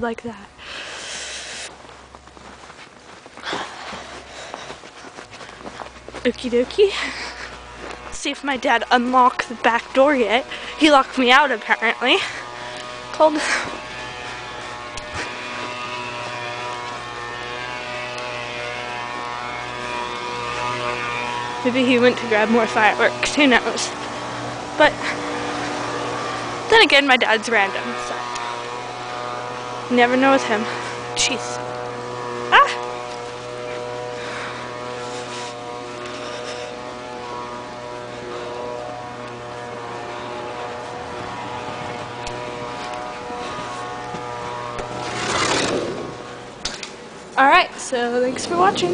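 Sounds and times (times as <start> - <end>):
machine hum: 0.0 - 48.9
steady mechanical drone: 0.0 - 48.9.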